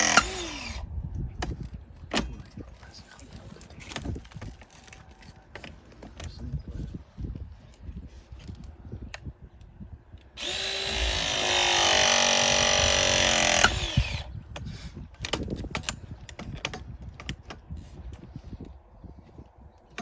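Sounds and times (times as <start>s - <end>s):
power drill motor whine: 0.0s - 0.8s, 10.4s - 14.3s.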